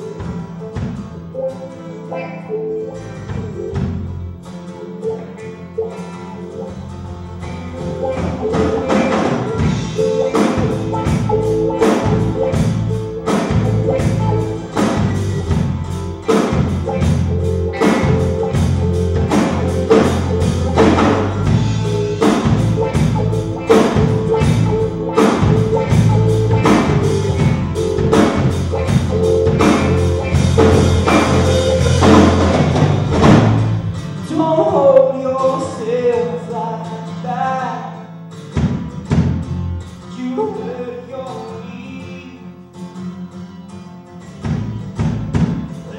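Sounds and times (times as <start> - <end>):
band playing: 0.0 - 36.8
bass line: 2.5 - 4.5, 6.5 - 35.2
steady drum beat: 7.8 - 34.0.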